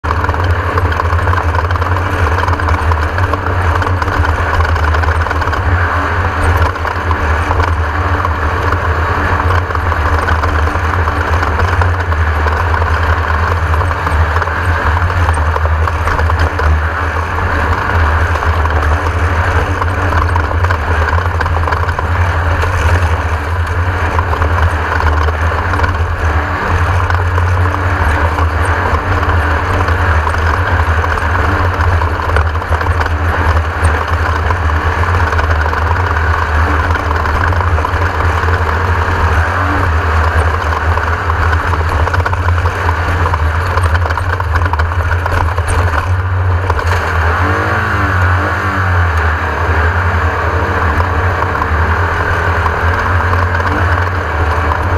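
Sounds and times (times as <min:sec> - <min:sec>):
race car engine droning: 0:00.0 - 0:54.9.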